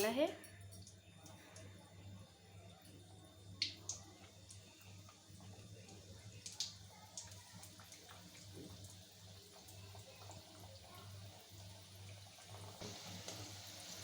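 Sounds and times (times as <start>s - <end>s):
food sizzling in hot oil: 3.6s - 14.0s.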